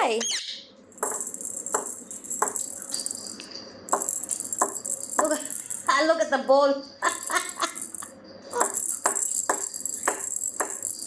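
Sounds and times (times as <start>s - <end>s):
rhythmic jingling rattle: 1.0s - 6.3s, 7.0s - 11.0s
bright bell-like jingle: 1.1s - 5.9s, 7.1s - 11.0s.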